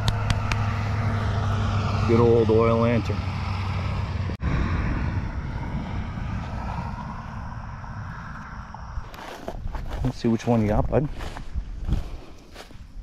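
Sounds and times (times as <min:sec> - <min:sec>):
low engine drone: 0:00.0 - 0:09.8.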